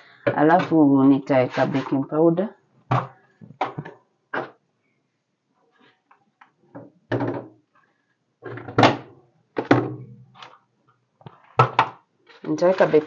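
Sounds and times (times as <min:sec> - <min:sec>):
kitchen items thunking: 0:06.8 - 0:07.5, 0:08.4 - 0:10.1.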